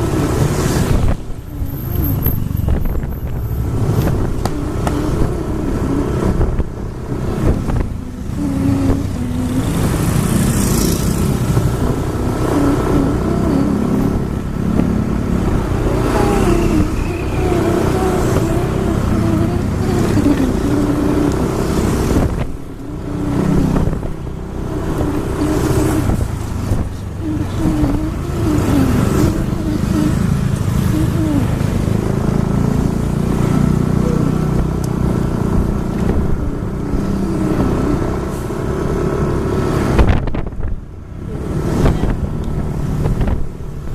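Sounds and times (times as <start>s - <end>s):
engine and road rumble: 0.0s - 43.9s
wavering tones: 15.7s - 24.2s.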